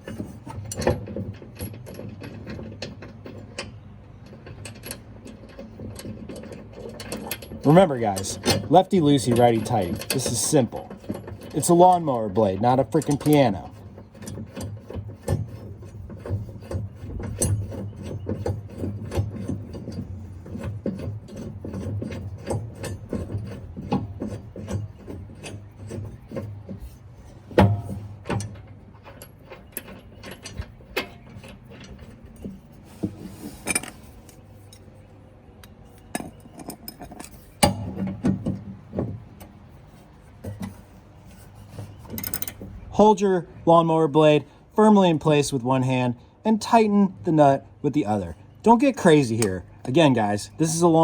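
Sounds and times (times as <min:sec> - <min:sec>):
metal nut clicking and scraping: 0:00.0 - 0:51.0
sharp metal knocks: 0:27.5 - 0:28.5, 0:37.6 - 0:39.1.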